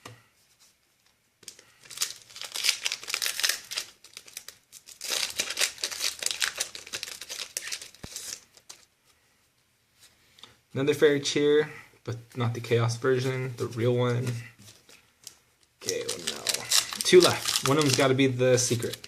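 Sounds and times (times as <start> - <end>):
foil wrapper crinkling and tearing: 1.4 - 8.9, 14.7 - 19.0.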